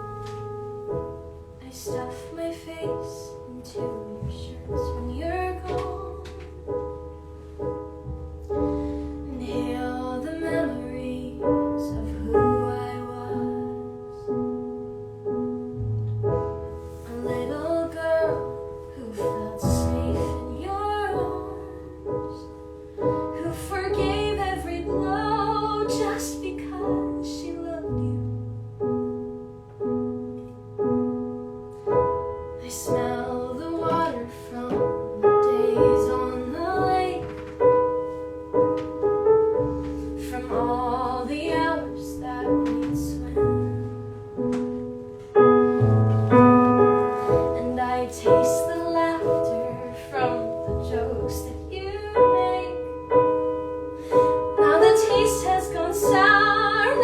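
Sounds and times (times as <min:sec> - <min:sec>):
piano accompaniment: 0:00.0 - 0:57.0
woman singing classical style: 0:01.6 - 0:06.9, 0:08.6 - 0:14.4, 0:16.9 - 0:28.6, 0:32.6 - 0:38.1, 0:39.7 - 0:44.5, 0:46.3 - 0:57.0.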